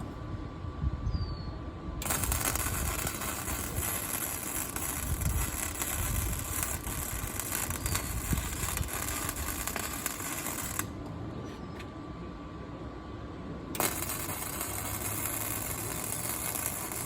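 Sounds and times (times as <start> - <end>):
welding arc crackling: 2.0 - 11.0, 13.8 - 17.0.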